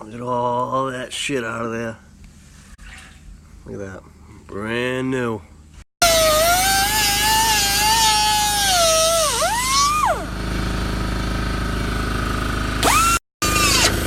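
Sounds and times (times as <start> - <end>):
steady low hum: 0.0 - 7.8
power tool motor whining: 6.0 - 10.3, 12.8 - 14.0.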